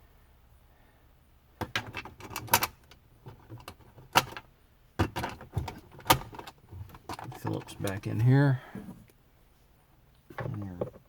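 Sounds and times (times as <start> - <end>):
hand tools and screws rattling: 1.6 - 8.4.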